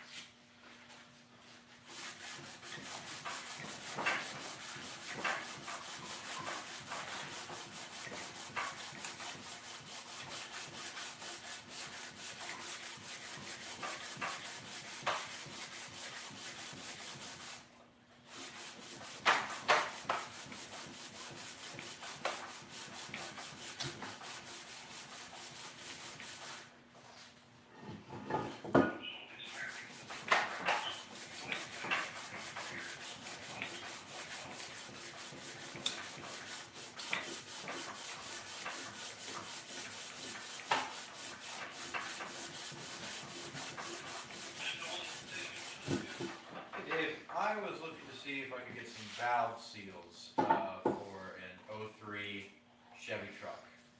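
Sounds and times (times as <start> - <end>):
sanding metal surface: 1.9 - 17.6, 18.3 - 26.6, 29.5 - 46.2.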